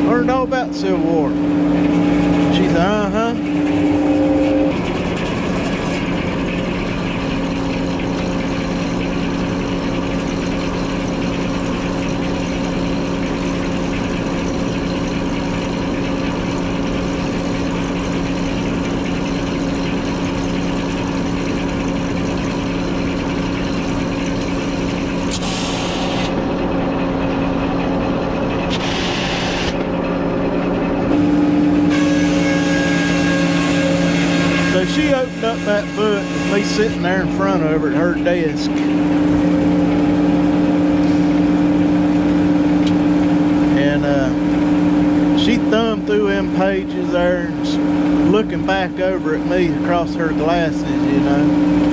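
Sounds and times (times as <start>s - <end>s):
engine humming steadily: 0.0s - 51.9s.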